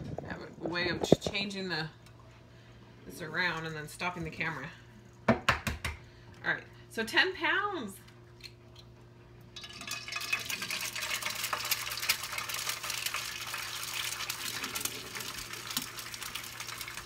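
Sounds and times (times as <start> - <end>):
food sizzling in a frying pan: 9.6 - 17.0.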